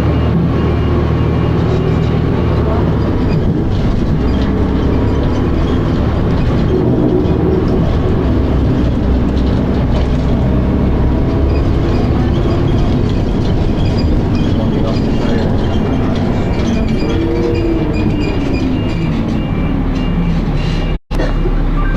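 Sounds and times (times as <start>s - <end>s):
bus engine drone: 0.0s - 21.9s.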